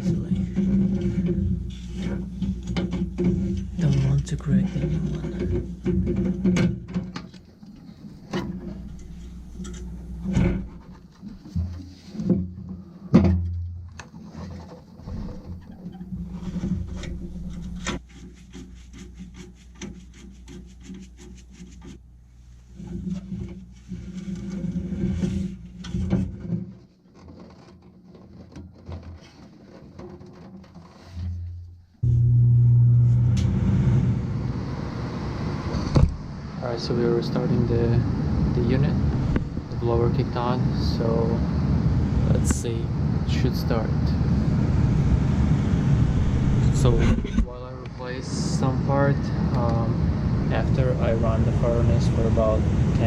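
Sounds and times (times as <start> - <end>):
steady low hum: 0.0 - 26.8, 31.2 - 53.0
handling clatter on metal cabinet: 0.2 - 18.6
metallic knocks and clunks: 0.4 - 4.1, 4.7 - 18.0
furnace motor humming: 8.0 - 10.8, 32.0 - 36.5.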